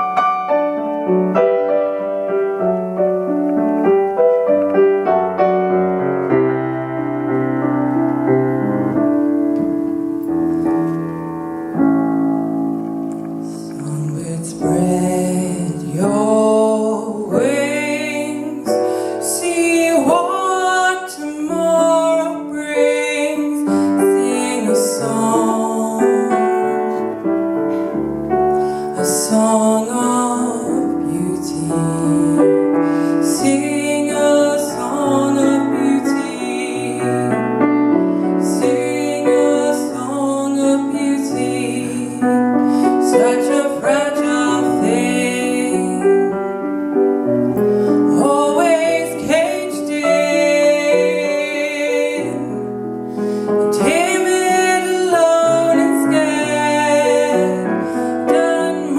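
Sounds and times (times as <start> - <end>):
piano accompaniment: 0.0 - 58.9
woman singing: 13.2 - 27.8, 28.8 - 46.8, 47.9 - 52.7, 53.6 - 58.9.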